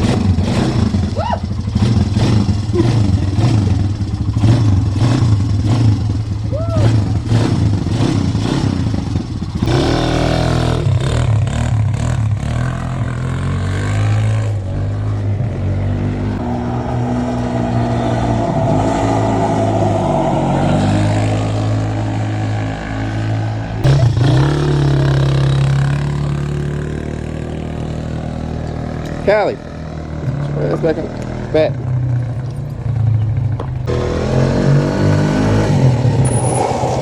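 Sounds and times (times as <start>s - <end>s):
atv engine revving: 0.0s - 37.0s.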